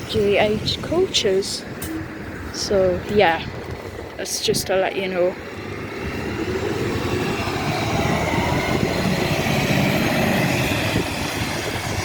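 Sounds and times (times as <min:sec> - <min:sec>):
faint gliding engine whine: 0:00.0 - 0:12.0
passing vehicle engine and tyres: 0:00.0 - 0:12.0.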